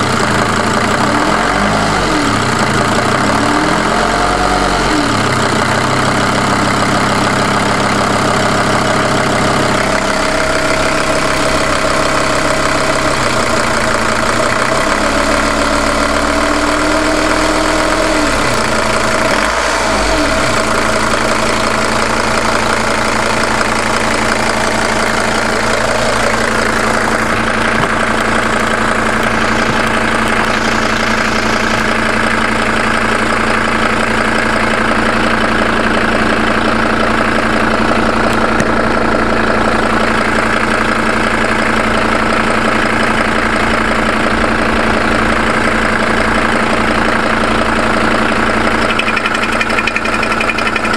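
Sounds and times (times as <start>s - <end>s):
diesel engine idling: 0.0s - 50.9s
engine knock: 0.0s - 50.9s.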